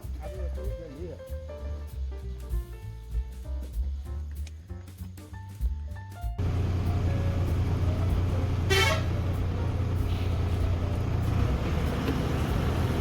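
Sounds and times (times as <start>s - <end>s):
bus horn toot: 6.4s - 11.3s
bus engine and road noise: 6.4s - 13.0s.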